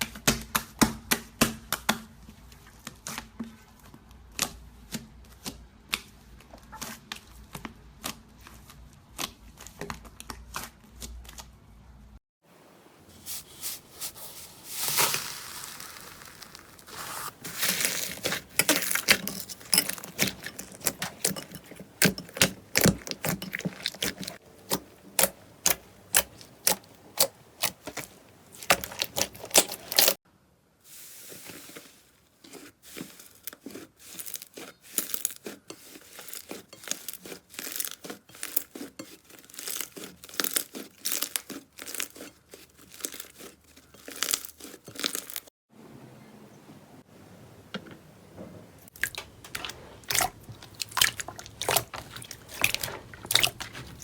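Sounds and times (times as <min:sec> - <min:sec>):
slime crackling and popping: 0:14.7 - 0:19.5, 0:32.9 - 0:45.5.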